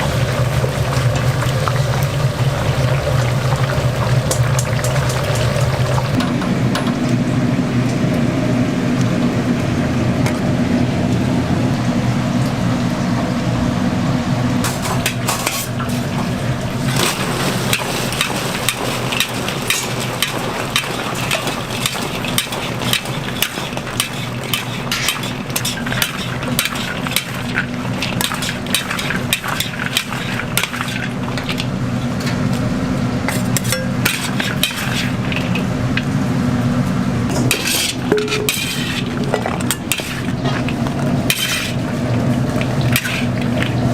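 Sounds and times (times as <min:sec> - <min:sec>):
steady low hum: 0:00.0 - 0:43.9
metal utensils scraping and clinking: 0:14.6 - 0:16.0, 0:16.9 - 0:31.7, 0:33.3 - 0:35.7, 0:37.3 - 0:41.9, 0:42.5 - 0:43.9.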